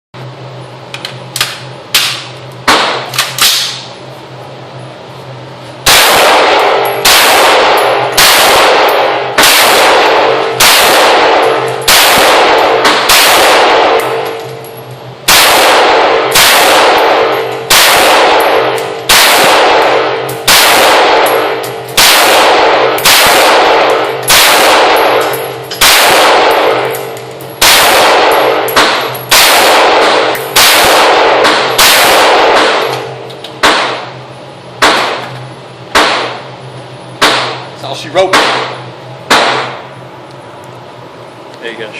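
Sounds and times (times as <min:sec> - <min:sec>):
rifle shots: 0:02.0 - 0:03.9, 0:05.8 - 0:14.4, 0:15.2 - 0:34.2, 0:34.8 - 0:35.3, 0:35.9 - 0:36.4, 0:37.2 - 0:39.8.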